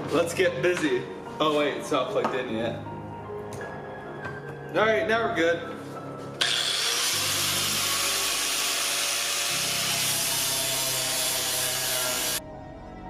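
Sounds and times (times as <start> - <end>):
background music with low chords: 0.0 - 13.0
angle grinder grinding: 6.4 - 12.4.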